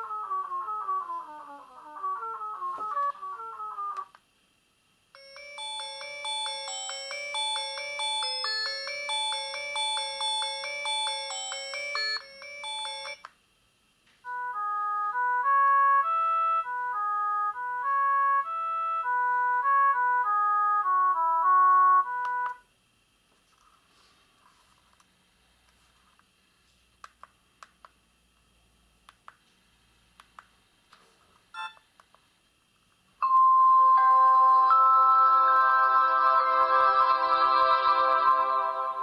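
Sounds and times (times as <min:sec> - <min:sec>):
fast ringtone melody: 0:05.2 - 0:13.2, 0:33.2 - 0:39.0
simple ringtone tune: 0:05.2 - 0:13.3, 0:33.2 - 0:39.0.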